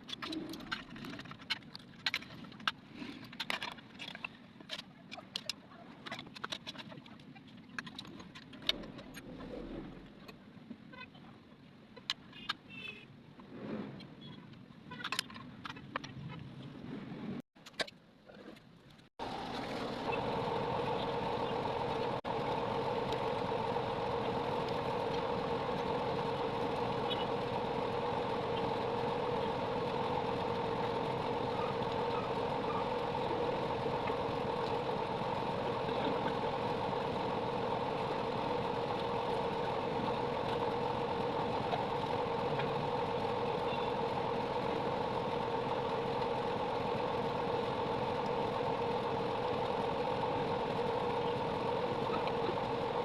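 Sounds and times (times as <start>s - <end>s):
generator engine running: 19.2s - 53.0s.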